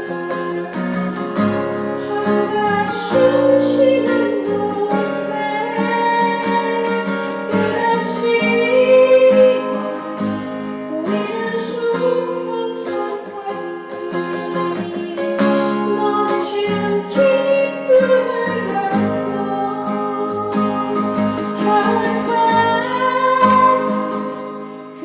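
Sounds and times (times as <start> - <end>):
guitar melody over chords: 0.0 - 25.0.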